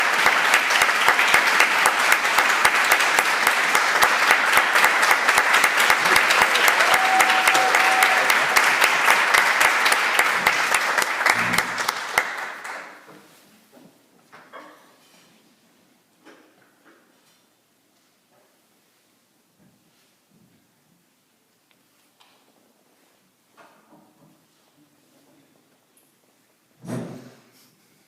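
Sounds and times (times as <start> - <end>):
audience applauding: 0.0 - 13.1.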